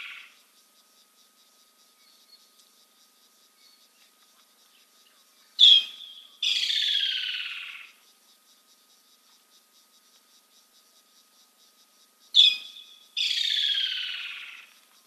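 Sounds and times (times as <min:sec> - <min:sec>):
insects ticking chorus: 0:00.0 - 0:15.0.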